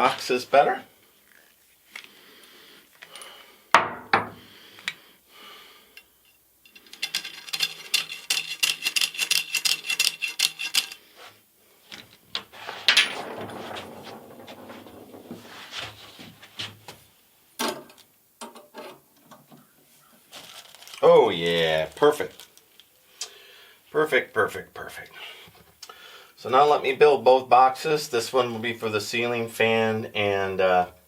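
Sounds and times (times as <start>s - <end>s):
pipe knocking and clattering: 12.9s - 15.6s.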